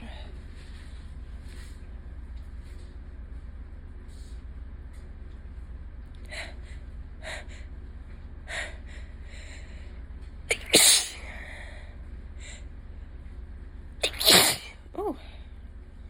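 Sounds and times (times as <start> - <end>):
person sneezing loudly: 10.5 - 11.3, 14.0 - 14.8.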